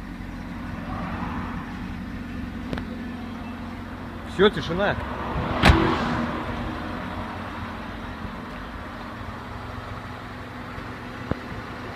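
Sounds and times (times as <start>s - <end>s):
car engine idling: 0.0s - 11.9s
sharp thump: 5.5s - 6.0s.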